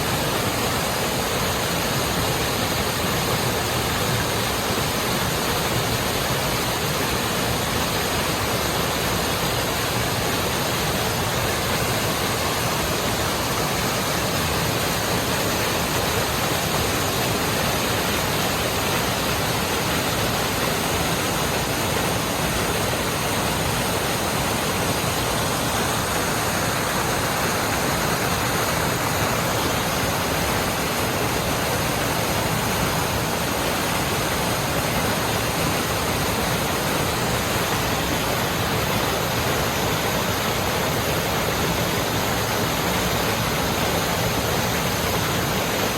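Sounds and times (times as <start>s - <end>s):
flowing water rushing: 0.0s - 45.9s.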